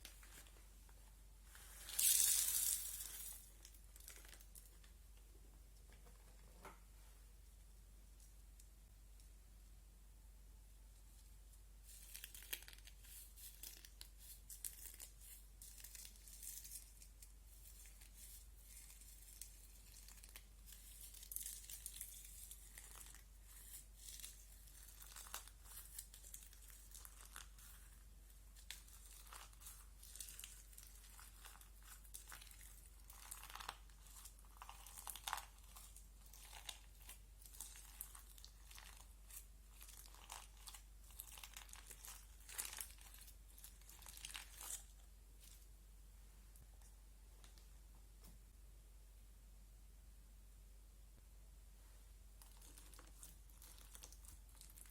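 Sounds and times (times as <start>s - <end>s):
slime crackling and popping: 11.9s - 45.6s, 52.4s - 54.9s.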